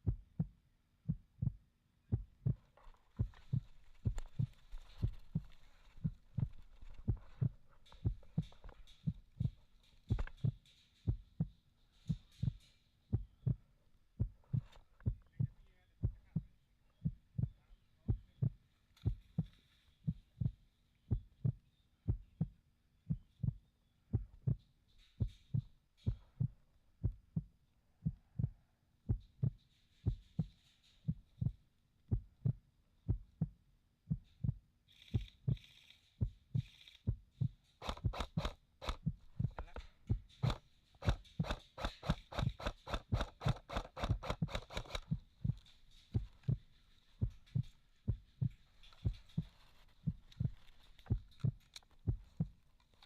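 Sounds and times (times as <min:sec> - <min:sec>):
regular low thuds: 0:00.0 - 0:53.0
rustling: 0:02.6 - 0:11.2, 0:34.9 - 0:53.0
sharp clicks: 0:34.9 - 0:46.6.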